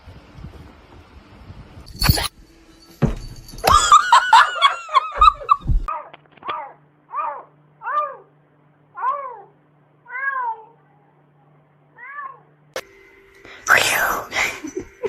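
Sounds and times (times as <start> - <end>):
cat meowing: 10.1 - 10.8, 12.0 - 12.5.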